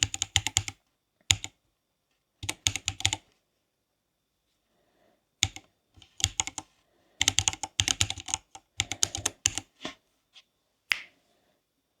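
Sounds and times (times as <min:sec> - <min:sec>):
mechanical keyboard typing: 0:00.0 - 0:01.6, 0:02.4 - 0:03.2, 0:05.4 - 0:09.7.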